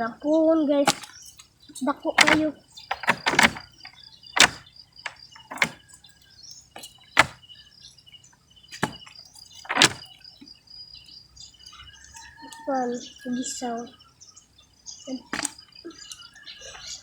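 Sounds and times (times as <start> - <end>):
faint chirping: 0.0 - 17.0
sharp knocks: 0.9 - 1.1, 2.2 - 5.8, 7.2 - 7.4, 8.8 - 9.1, 9.7 - 10.1.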